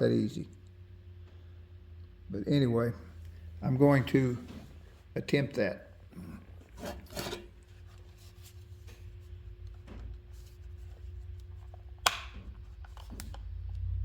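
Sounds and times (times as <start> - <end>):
faint steady hum: 0.0 - 14.0
plastic handling clicks: 11.3 - 13.5
battery pack release click: 12.0 - 13.4.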